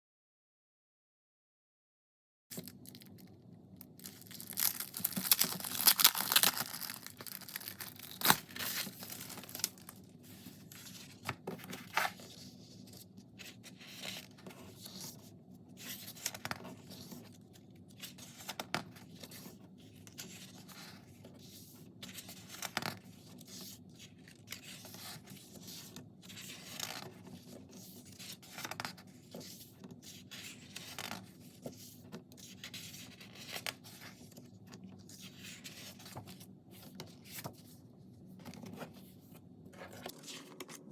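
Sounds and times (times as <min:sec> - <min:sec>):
paper tearing and rustling: 0:04.0 - 0:10.0.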